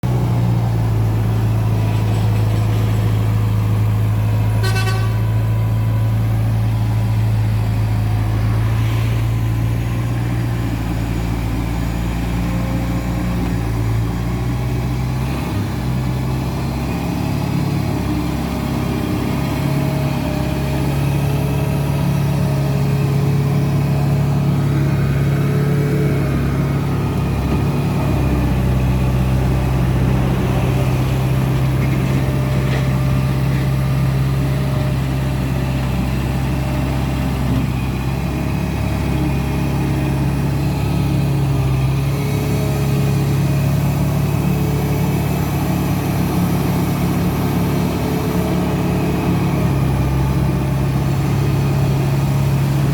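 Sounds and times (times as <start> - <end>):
loader diesel engine running: 0.0 - 52.9
horn toot: 4.6 - 5.4.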